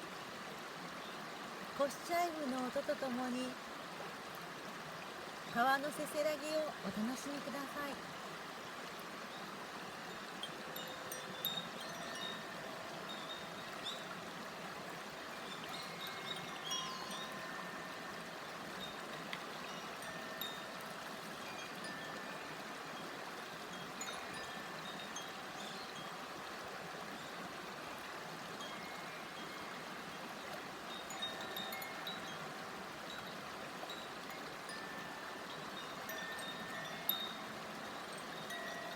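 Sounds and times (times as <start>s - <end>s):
shallow stream murmuring: 0.0s - 38.9s
wind chime ringing: 10.1s - 14.1s, 15.5s - 22.6s, 24.0s - 26.1s, 30.9s - 34.1s, 34.7s - 38.9s.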